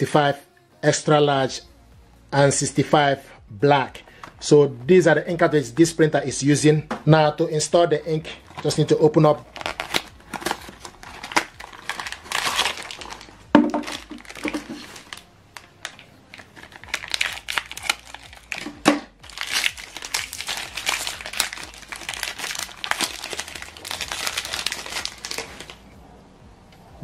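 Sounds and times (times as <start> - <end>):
plastic and paper crinkling: 8.4 - 25.8.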